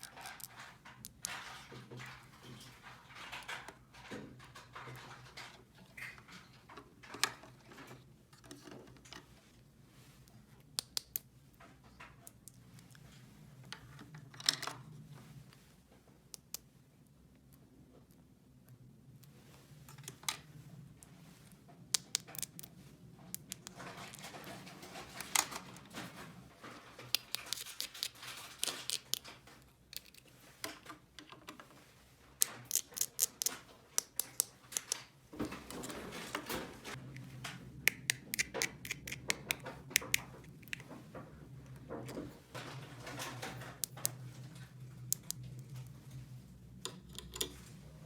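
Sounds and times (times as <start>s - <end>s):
soft scraping and rustling: 0.0s - 10.6s, 11.4s - 16.2s, 18.8s - 21.9s, 22.6s - 32.4s
plastic toy pieces clicking: 32.7s - 35.0s, 37.9s - 40.8s.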